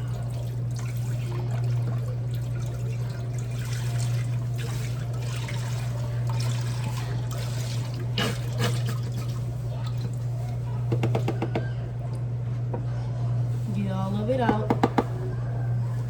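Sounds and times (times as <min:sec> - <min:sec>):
broth pouring into a pot: 0:00.0 - 0:10.7.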